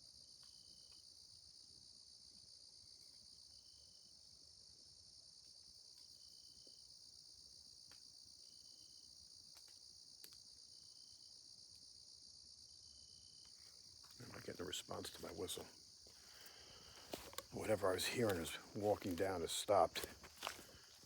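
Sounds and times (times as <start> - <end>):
crickets and night insects droning: 0.0 - 21.0.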